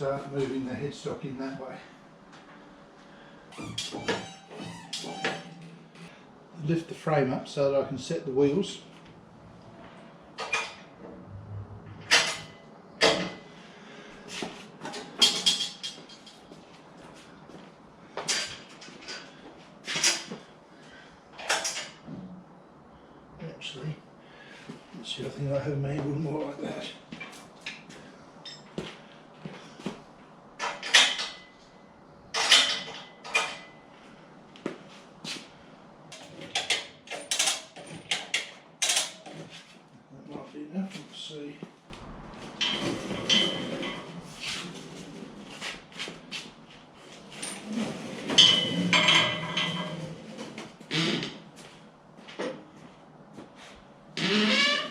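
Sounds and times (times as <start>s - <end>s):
metal parts and tools clanking: 10.4s - 13.4s, 14.8s - 16.5s, 30.6s - 31.6s, 32.3s - 33.8s, 36.2s - 39.5s, 42.0s - 45.0s, 47.2s - 50.6s.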